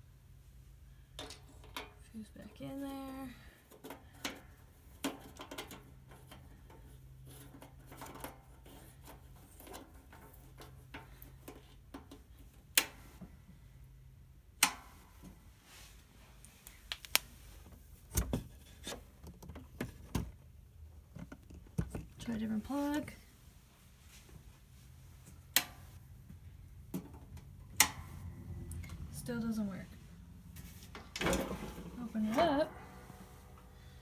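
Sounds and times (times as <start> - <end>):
small clicks and knocks of handling: 1.1 - 2.1, 3.6 - 13.4, 16.4 - 22.4, 25.2 - 29.0
faint low hum: 22.2 - 34.0.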